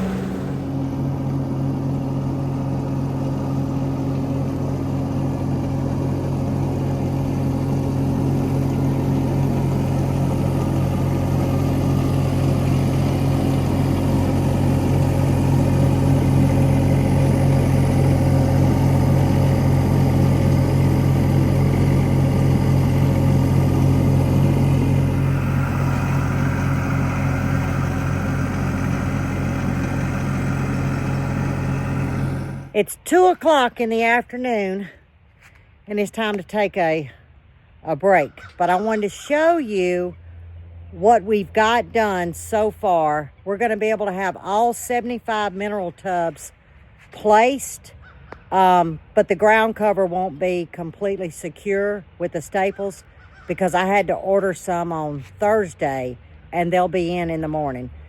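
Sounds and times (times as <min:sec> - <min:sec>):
high hiss: 0:00.0 - 0:00.8
skid steer engine running: 0:00.0 - 0:33.8.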